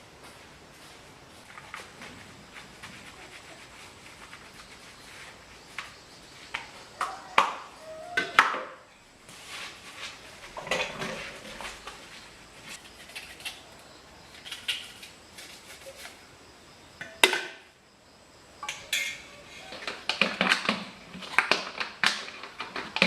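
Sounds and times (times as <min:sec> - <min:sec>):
dishes and utensils clinking: 0:18.6 - 0:20.0.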